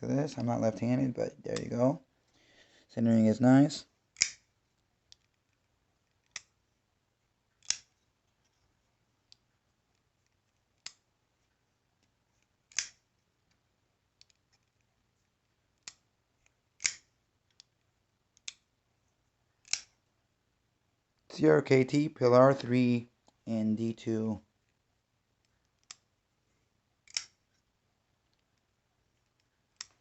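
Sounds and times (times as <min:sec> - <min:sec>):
folding knife metallic clicks: 0:04.2 - 0:04.4, 0:16.8 - 0:17.1, 0:19.6 - 0:19.9, 0:27.0 - 0:27.4.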